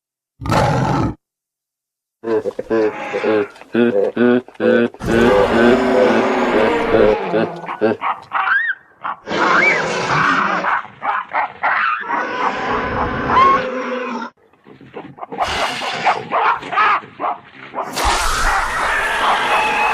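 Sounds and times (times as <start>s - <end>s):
loud animal calls: 5.0s - 14.3s, 15.0s - 19.9s.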